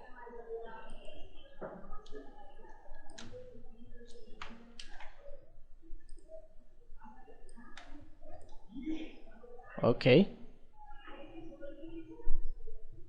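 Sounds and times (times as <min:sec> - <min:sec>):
computer mouse clicks: 0:02.9 - 0:03.4.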